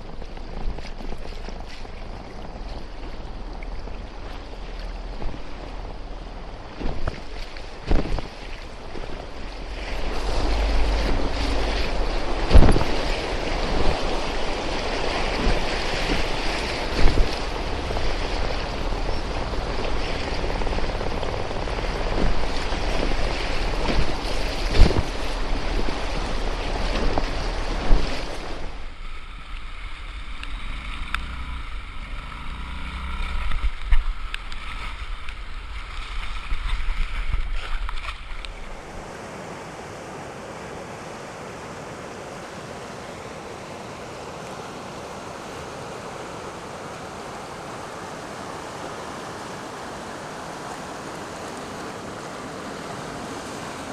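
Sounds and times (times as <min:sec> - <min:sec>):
wind buffeting microphone: 0:00.0 - 0:29.0
river rapids rushing: 0:00.0 - 0:53.9.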